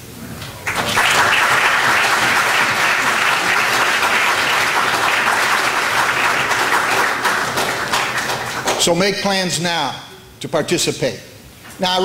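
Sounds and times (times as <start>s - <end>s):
crowd applauding: 0.6s - 9.0s.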